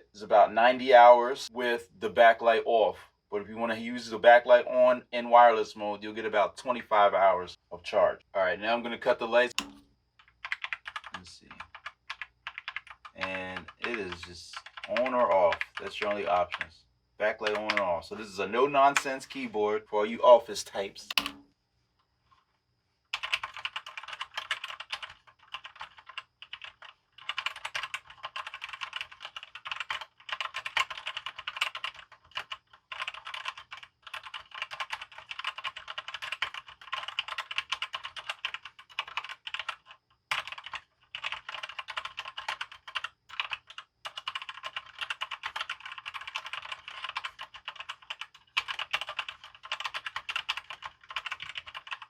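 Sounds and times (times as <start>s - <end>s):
fast typing on mechanical keyboard: 10.2s - 16.7s, 17.4s - 17.9s, 23.2s - 52.0s.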